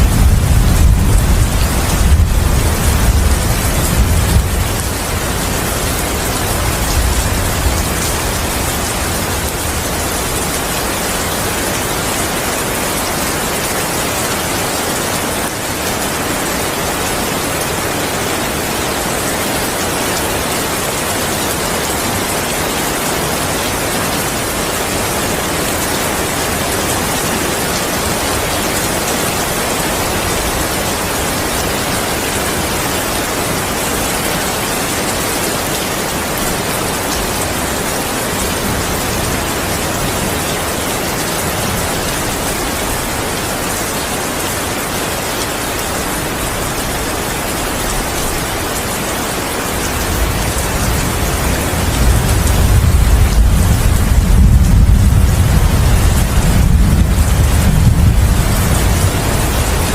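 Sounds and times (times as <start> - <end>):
thunder rumbling: 0.0 - 11.6, 49.8 - 59.9
heavy rain: 0.0 - 59.9.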